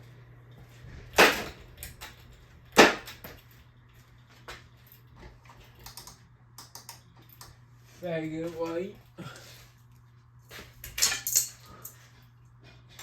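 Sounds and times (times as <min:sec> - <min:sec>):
ceiling fan motor hum: 0:00.0 - 0:13.0.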